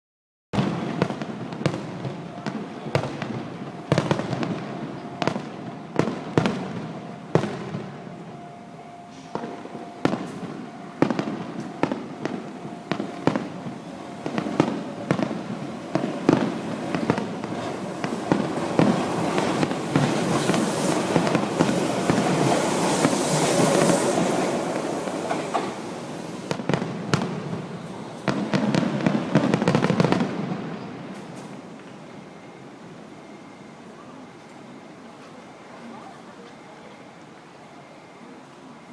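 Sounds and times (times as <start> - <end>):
crackling firework barrage: 0.6 - 8.1, 9.3 - 32.6
firework shells bursting: 14.2 - 30.3.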